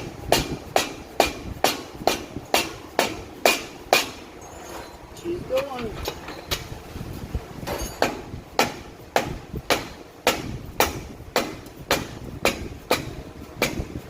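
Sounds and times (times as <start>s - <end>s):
hammer blows on steel: 0.0s - 4.3s, 7.7s - 14.0s.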